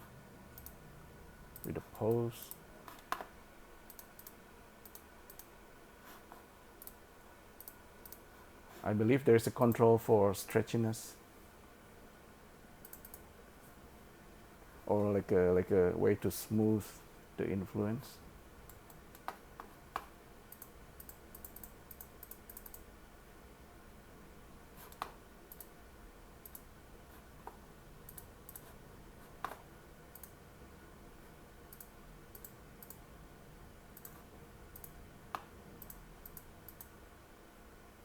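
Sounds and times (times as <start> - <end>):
mouse and keyboard clicks: 24.8 - 25.7.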